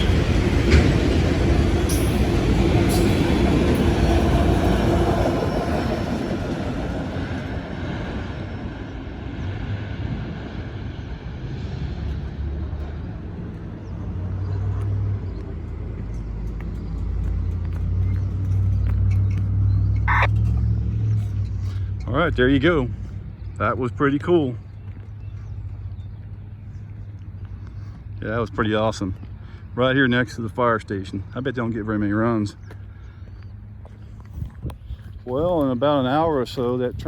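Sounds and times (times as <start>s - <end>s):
freight train rumbling past: 0.0s - 24.6s, 35.2s - 37.0s.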